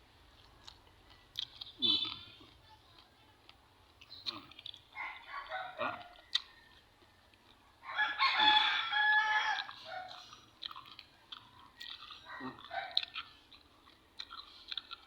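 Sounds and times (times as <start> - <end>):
faint chewing and mouth clicks: 0.2 - 15.0
rooster crowing: 5.0 - 10.2.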